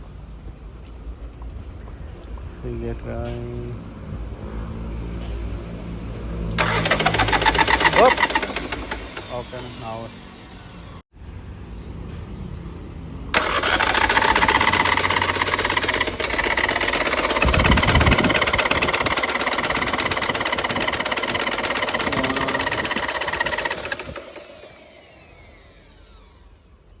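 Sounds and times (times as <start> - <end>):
diesel engine running: 6.1 - 11.0, 13.3 - 26.8.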